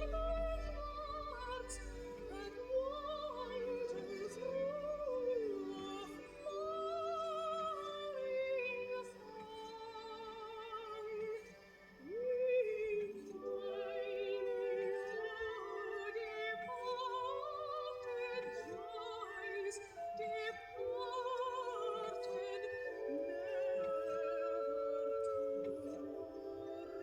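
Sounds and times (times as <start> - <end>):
operatic singing on vinyl record: 0.0 - 27.0.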